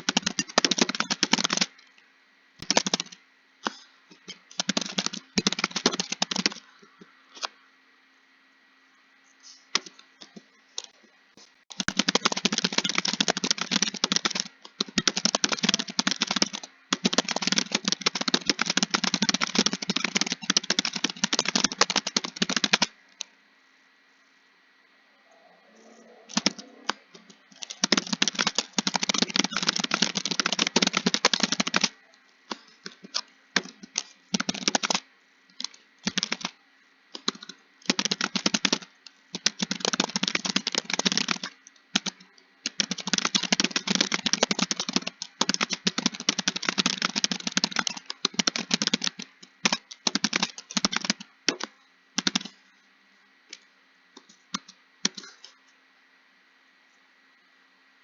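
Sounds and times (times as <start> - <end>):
typing on computer keyboard: 0.0 - 1.8, 2.6 - 6.7, 11.7 - 22.9, 26.3 - 35.0, 35.6 - 52.6.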